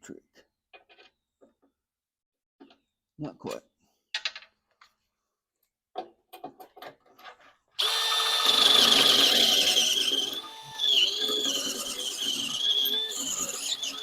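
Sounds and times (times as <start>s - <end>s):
electric drill whining: 7.8s - 14.0s.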